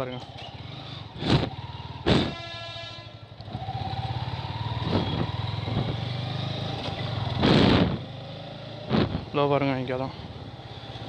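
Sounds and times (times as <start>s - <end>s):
motorcycle engine accelerating: 0.0s - 2.6s, 3.3s - 11.0s.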